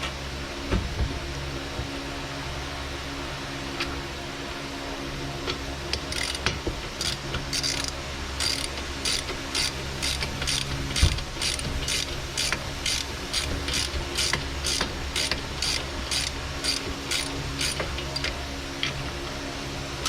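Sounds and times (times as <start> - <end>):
hand ratchet clicking: 5.9 - 19.0.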